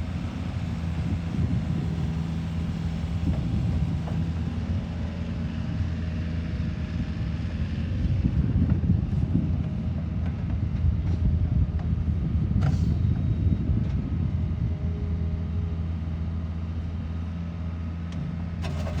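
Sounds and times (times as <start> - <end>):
excavator diesel engine running: 0.0 - 12.3.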